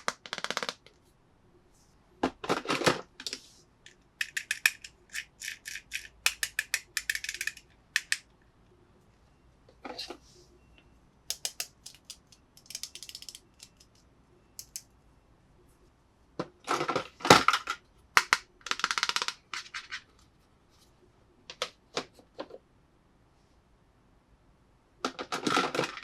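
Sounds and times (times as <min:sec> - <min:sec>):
plastic toy pieces clicking: 0:04.2 - 0:08.3, 0:11.3 - 0:14.0, 0:14.6 - 0:14.9, 0:18.2 - 0:19.7.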